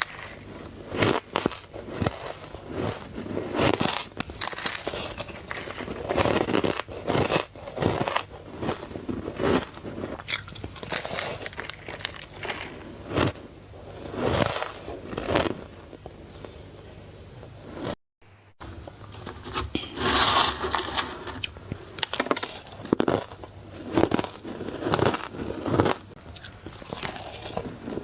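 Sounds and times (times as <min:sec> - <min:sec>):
crunching ice bites: 0:03.6 - 0:08.8, 0:09.4 - 0:13.4, 0:20.4 - 0:28.0.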